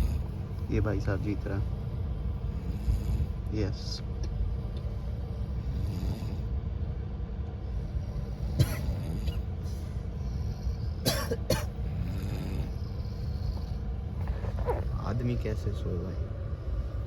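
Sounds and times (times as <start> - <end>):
loud harsh snort: 0.0 - 0.4, 2.5 - 3.4, 5.3 - 6.5, 8.0 - 15.0
people snoring: 0.0 - 1.7, 2.3 - 3.8, 4.5 - 6.6, 7.7 - 9.5, 11.8 - 15.2
train rumble: 0.0 - 17.0.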